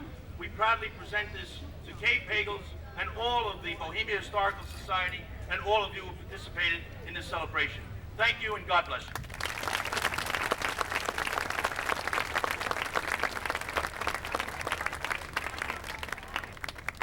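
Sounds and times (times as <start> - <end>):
crowd applauding: 9.2 - 17.0.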